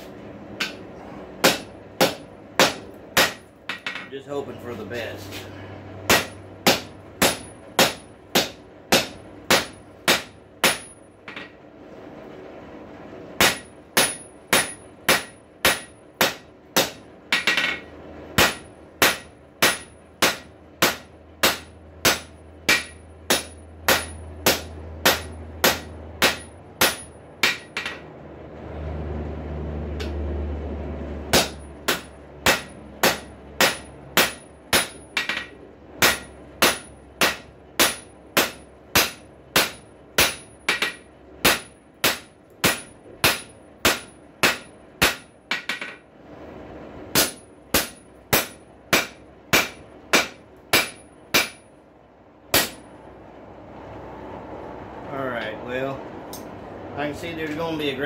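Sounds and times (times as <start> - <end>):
hammer striking metal on anvil: 0.6 - 4.2, 6.1 - 11.6, 13.4 - 28.1, 31.3 - 46.0, 47.1 - 51.7, 52.5 - 52.9
low rumbling noise: 15.4 - 40.2, 43.0 - 58.0.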